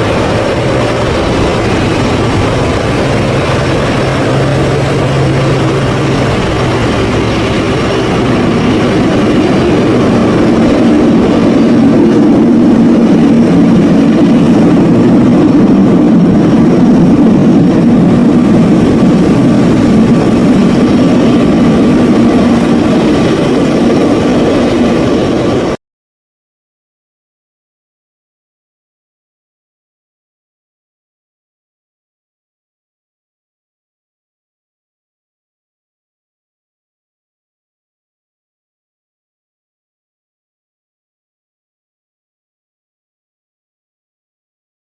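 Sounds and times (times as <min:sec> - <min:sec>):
turboprop engines droning: 0:00.0 - 0:25.8.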